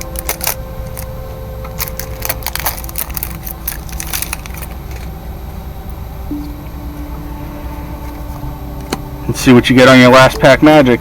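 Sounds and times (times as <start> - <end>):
foil packaging crinkling: 0.0 - 5.1
steady low hum: 0.0 - 11.0.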